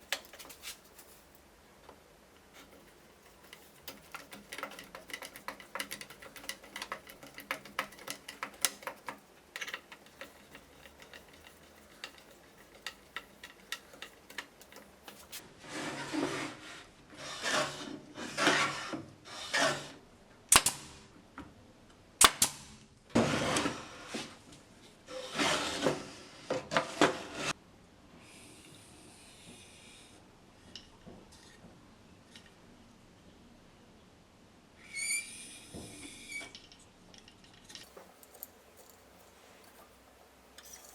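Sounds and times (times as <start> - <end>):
scraping strokes on wood: 0.0 - 1.4, 2.4 - 19.9.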